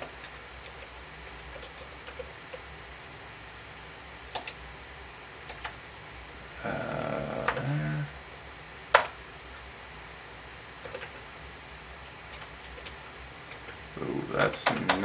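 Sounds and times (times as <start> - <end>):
low steady hum: 0.0 - 15.0
keyboard keystrokes: 14.4 - 15.0.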